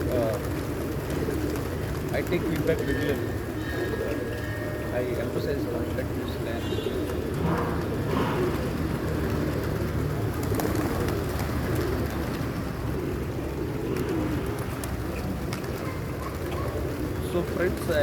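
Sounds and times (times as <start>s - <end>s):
pigeons cooing: 0.0s - 18.0s.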